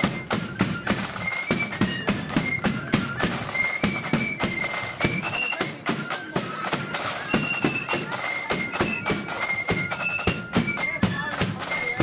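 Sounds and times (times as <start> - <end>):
flutes playing high melody: 0.0 - 12.0.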